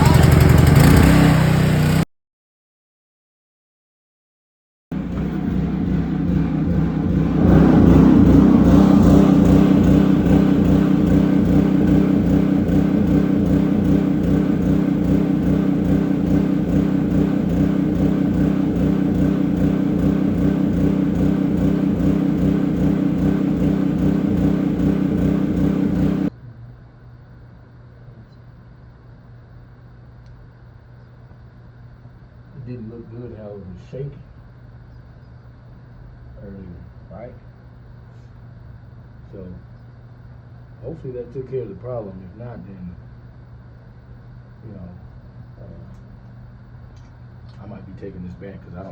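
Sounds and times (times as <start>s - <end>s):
generator engine running: 0.0s - 2.0s, 4.9s - 26.3s, 44.6s - 48.9s
faint low hum: 5.0s - 48.9s.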